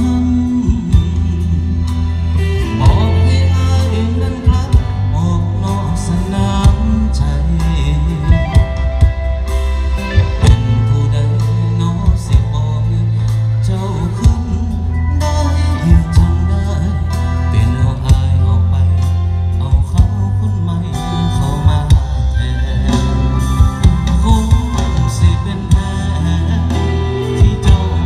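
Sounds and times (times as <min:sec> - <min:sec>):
loud music with bass and beat: 0:00.0 - 0:28.0
person singing: 0:00.0 - 0:28.0.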